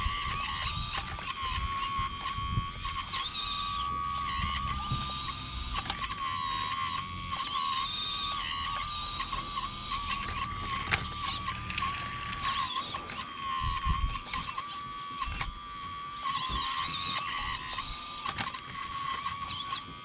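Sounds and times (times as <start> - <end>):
toy excavator pump whining: 0.0 - 20.0.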